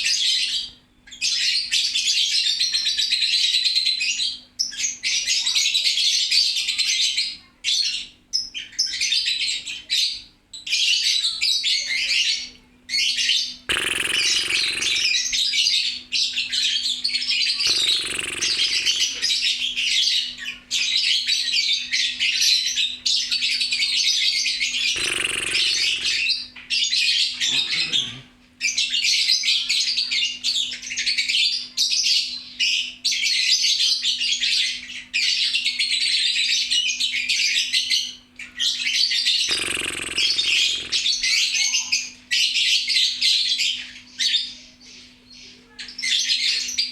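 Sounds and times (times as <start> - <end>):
lovebirds chattering shrilly: 11.2 - 31.4, 34.4 - 44.5
brief bursts of noise: 13.7 - 15.2, 17.7 - 19.3, 24.8 - 26.3.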